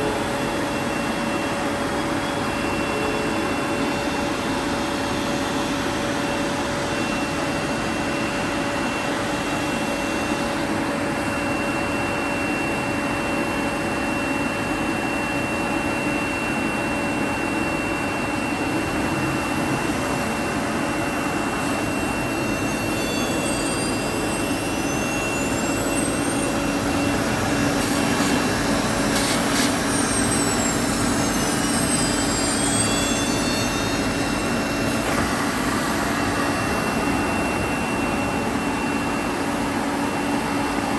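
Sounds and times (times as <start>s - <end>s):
cnc router running with high whine: 0.0s - 40.9s
whines gliding in pitch: 15.0s - 40.9s.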